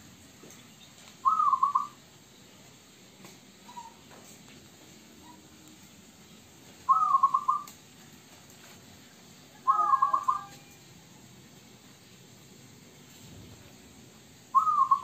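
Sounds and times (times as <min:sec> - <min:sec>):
dove cooing: 0:01.2 - 0:01.9, 0:06.9 - 0:07.7, 0:09.6 - 0:10.6, 0:14.6 - 0:15.0.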